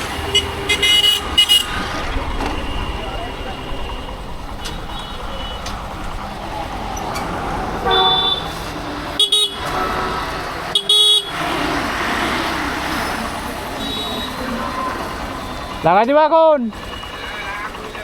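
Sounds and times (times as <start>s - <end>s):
vehicle horns honking: 0.0s - 6.2s, 7.8s - 11.6s, 13.7s - 16.0s, 16.7s - 18.0s
hum of passing traffic: 0.0s - 18.0s.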